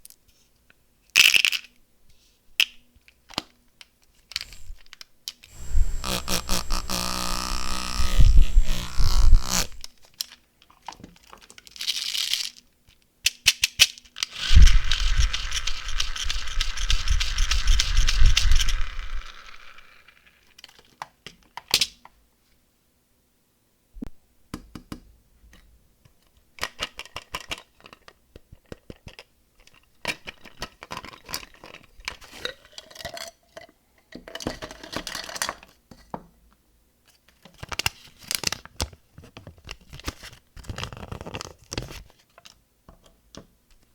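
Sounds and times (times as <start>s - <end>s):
candies clicking and rattling: 14.3s - 20.8s.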